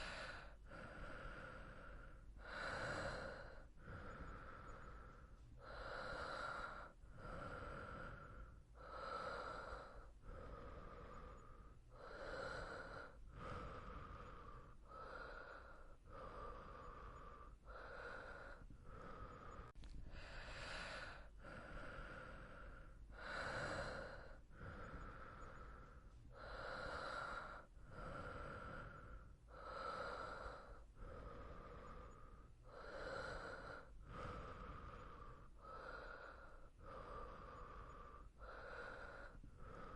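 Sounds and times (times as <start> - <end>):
person breathing in sleep: 0.0 - 39.9.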